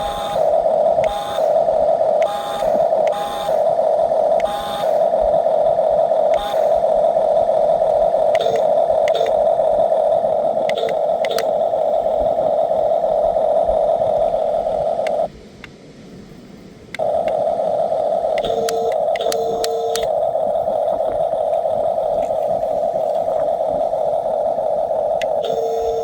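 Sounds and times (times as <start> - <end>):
toy bulldozer motor whine: 0.0 - 5.2, 6.2 - 11.8, 17.0 - 26.0
short clicks: 2.2 - 3.6, 8.3 - 9.4, 10.6 - 11.6, 18.4 - 20.1.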